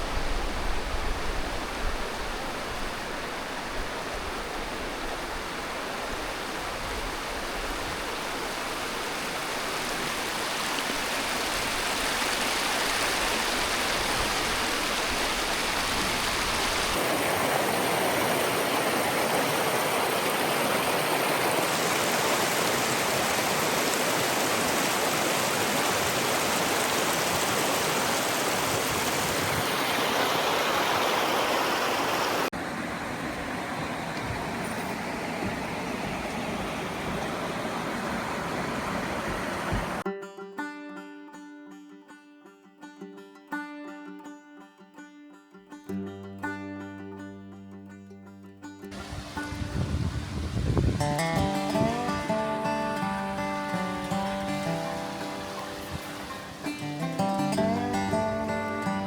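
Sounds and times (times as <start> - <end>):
water rushing over rock: 5.6 - 40.0, 49.0 - 59.0.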